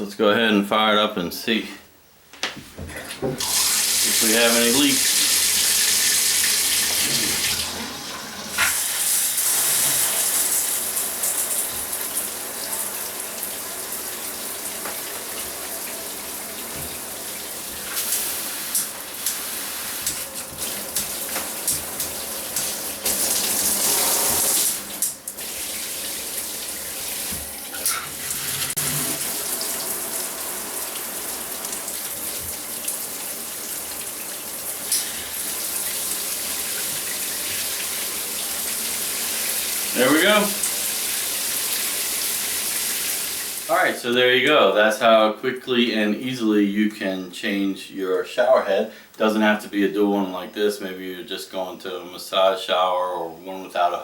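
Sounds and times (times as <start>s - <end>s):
showerhead water spraying: 3.4s - 7.8s, 8.5s - 43.7s.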